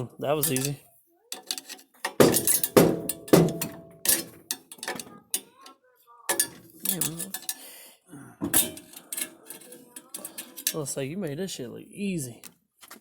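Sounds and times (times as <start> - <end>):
metal tools clanking: 0.3 - 5.7, 6.3 - 7.7, 8.4 - 11.0.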